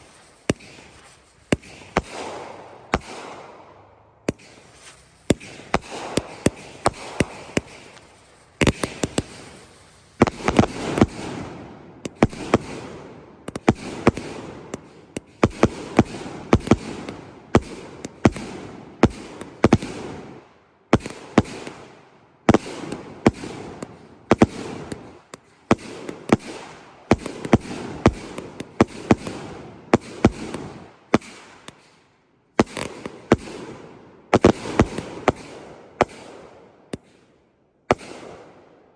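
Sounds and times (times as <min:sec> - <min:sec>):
firework crackling: 0:00.0 - 0:20.4, 0:22.5 - 0:31.9, 0:32.6 - 0:33.8
firework launch and break reports: 0:04.3 - 0:20.1.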